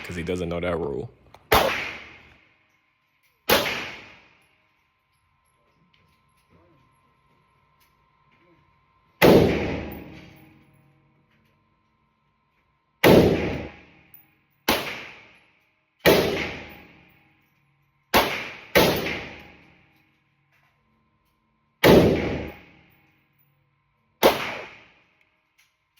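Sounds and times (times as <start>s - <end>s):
gunshots with ringing decay: 1.5s - 2.3s, 3.5s - 4.4s, 9.2s - 10.5s, 13.0s - 14.0s, 14.7s - 15.4s, 16.0s - 17.1s, 18.1s - 19.8s, 21.8s - 22.8s, 24.2s - 25.0s.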